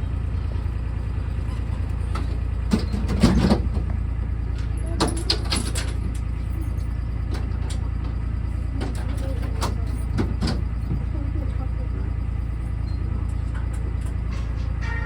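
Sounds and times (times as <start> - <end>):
ride train rumbling on track: 0.0 - 15.0
knocks and clatters: 1.4 - 6.3, 7.2 - 11.2, 13.2 - 15.0.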